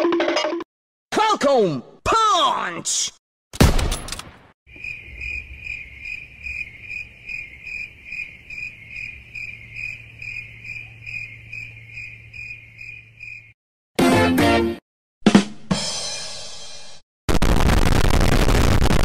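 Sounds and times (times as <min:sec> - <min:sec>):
crickets chirping: 0:04.7 - 0:13.6.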